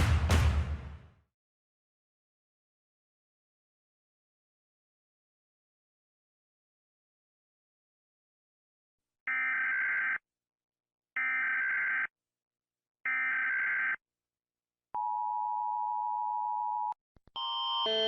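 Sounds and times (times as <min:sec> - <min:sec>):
electronic alarm: 0:09.3 - 0:10.2, 0:11.2 - 0:12.1, 0:13.1 - 0:14.0, 0:16.6 - 0:18.0.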